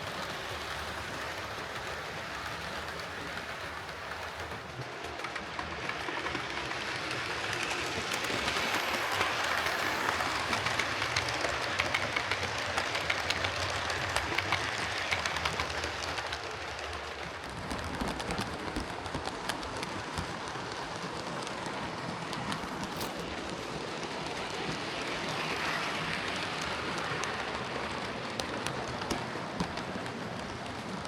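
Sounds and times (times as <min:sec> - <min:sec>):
wheels clicking on rails: 0:00.0 - 0:31.0
model train motor whirr: 0:00.1 - 0:20.3, 0:22.3 - 0:27.6.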